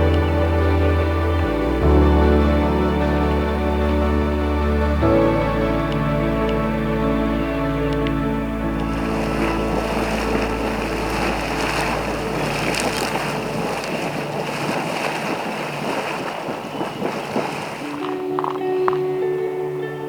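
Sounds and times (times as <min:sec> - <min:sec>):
background music: 0:00.0 - 0:15.6, 0:17.8 - 0:20.0
water splashing: 0:08.7 - 0:19.2
geyser steam rushing and hissing: 0:09.3 - 0:18.0.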